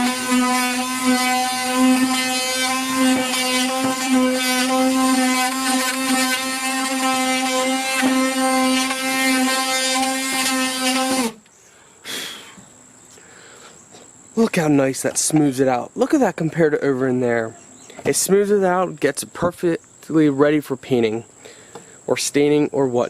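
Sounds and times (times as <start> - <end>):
oscillating sander whine: 0.0 - 11.5.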